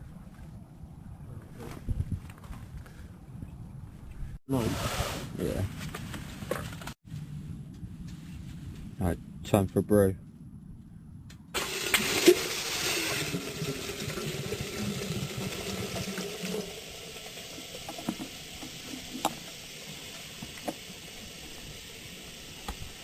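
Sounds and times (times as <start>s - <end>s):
water pouring into container: 11.6s - 22.5s.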